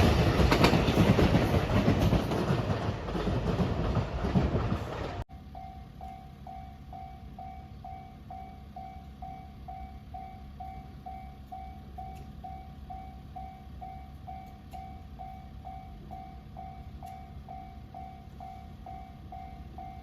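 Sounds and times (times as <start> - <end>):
level-crossing bell ringing: 5.3 - 20.0.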